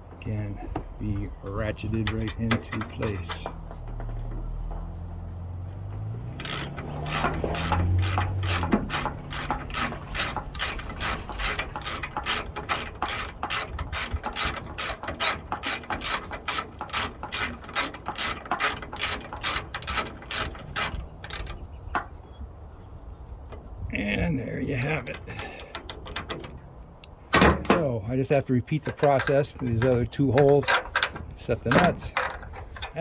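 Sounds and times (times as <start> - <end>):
ratchet wrench clicking: 6.4 - 21.5.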